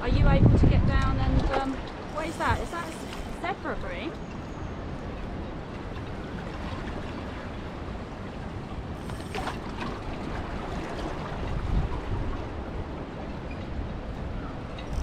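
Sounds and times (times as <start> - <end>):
wind buffeting microphone: 0.0 - 15.0
sea wash: 1.4 - 4.1.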